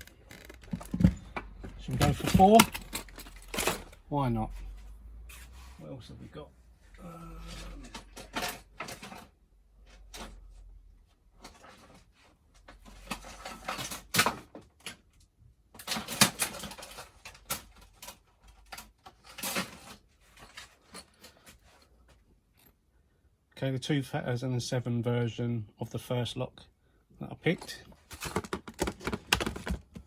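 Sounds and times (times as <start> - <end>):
tools clicking and knocking: 0.0 - 4.0, 28.0 - 30.0
packaging rustling: 27.9 - 30.0.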